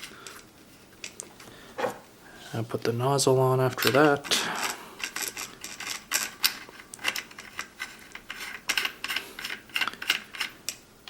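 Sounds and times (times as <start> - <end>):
small parts clicking and tapping: 3.7 - 10.8.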